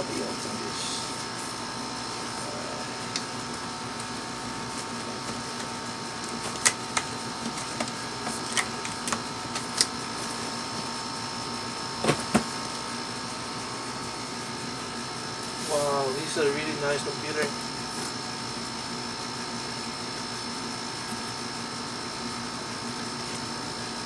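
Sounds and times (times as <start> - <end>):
steady room hum: 0.0 - 24.0
packaging clicks and taps: 5.3 - 9.9.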